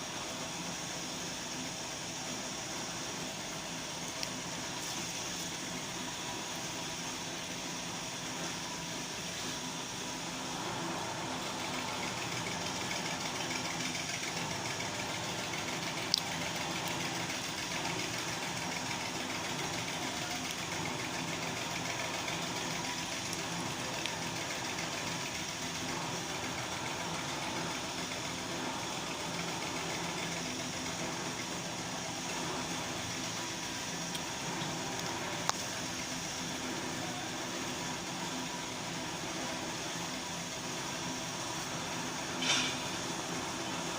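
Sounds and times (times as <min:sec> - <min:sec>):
mechanical hum and drone: 0:00.0 - 0:43.9
small clicks: 0:16.0 - 0:17.0.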